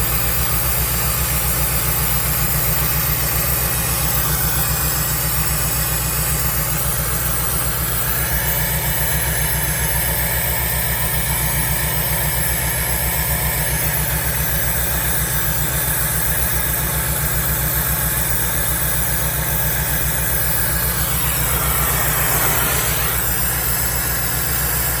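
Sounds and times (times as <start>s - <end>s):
excavator engine idling: 0.4s - 25.0s
swooping sound: 20.0s - 24.8s.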